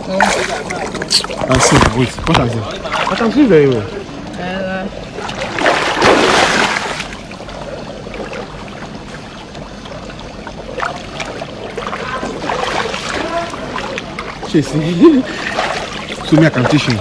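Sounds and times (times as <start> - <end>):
water sloshing and lapping: 0.0 - 17.0
loud water splash: 5.2 - 7.4, 10.8 - 14.5.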